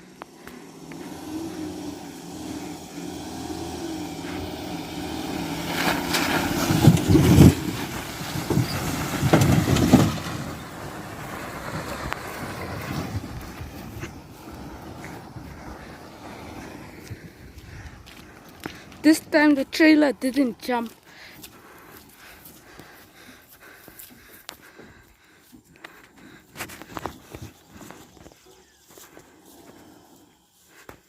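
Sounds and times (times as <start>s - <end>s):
diesel engine under load: 0.0s - 31.0s
heavy knocks and rattling: 6.6s - 10.5s.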